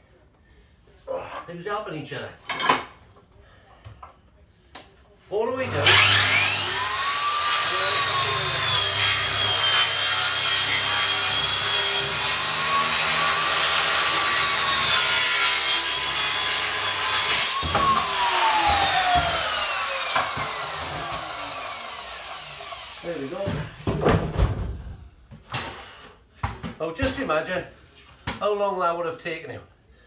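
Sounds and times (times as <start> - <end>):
electric saw cutting wood: 5.6 - 23.4.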